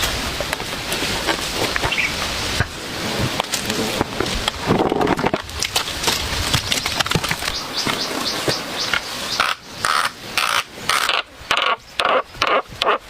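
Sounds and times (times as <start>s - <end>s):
rustling and clicking: 0.0s - 9.5s.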